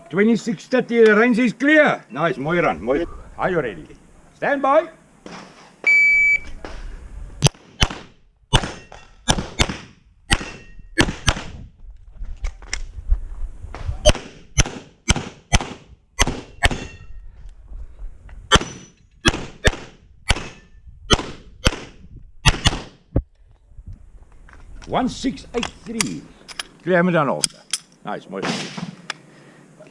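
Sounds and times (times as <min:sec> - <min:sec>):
handgun firing rapid shots: 0:18.5 - 0:22.9.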